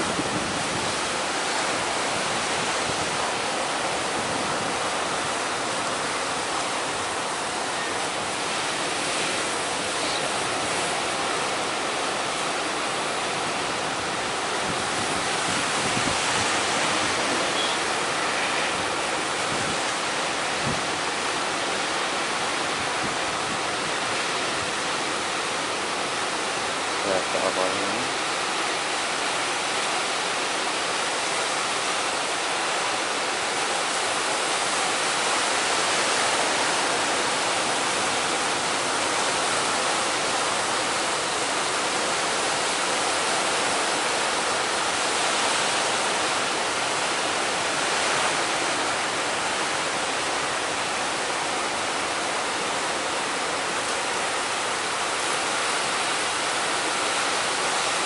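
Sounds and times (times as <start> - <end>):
strong wind: 0.0 - 27.4
waves breaking on shore: 0.0 - 58.0.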